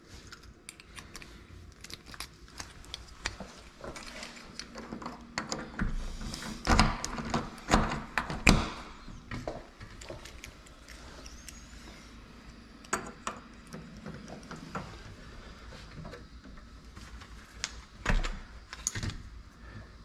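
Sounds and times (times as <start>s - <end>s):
clicks and knocks on a lock: 4.6s - 6.0s.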